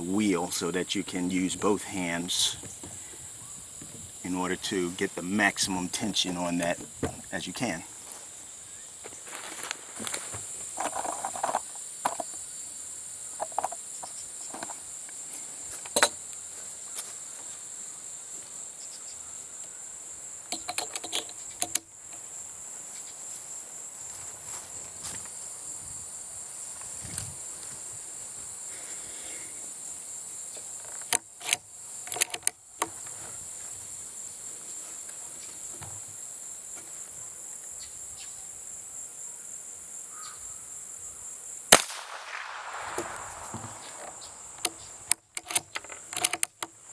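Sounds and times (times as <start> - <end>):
crickets chirring: 0.0 - 46.9
sharp clicks and knocks: 20.5 - 22.2, 30.8 - 33.1, 42.4 - 46.8.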